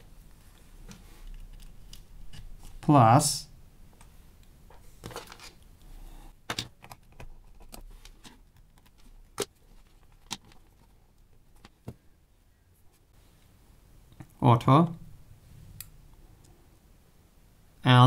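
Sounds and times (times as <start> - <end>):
faint handling noise: 3.9 - 12.1.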